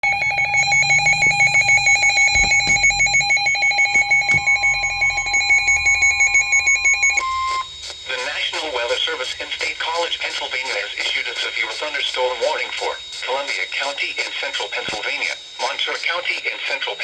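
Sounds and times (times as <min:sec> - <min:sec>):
pulsing electronic alert beeping: 0:00.0 - 0:09.0
steady alert tone: 0:00.2 - 0:07.2.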